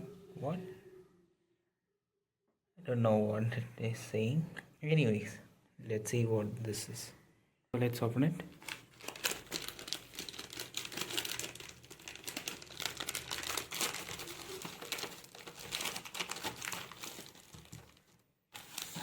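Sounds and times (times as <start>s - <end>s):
packaging crinkling and rustling: 8.5s - 19.0s.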